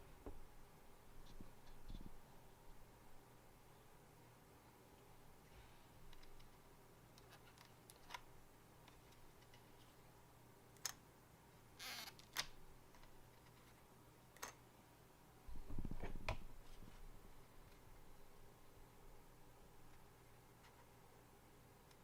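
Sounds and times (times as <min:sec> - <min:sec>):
light clicks of small parts: 0:06.1 - 0:09.8.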